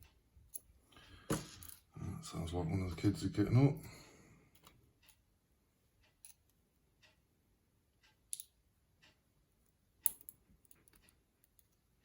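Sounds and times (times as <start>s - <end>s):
small metallic clicks of lock parts: 8.0s - 8.6s, 10.0s - 11.8s.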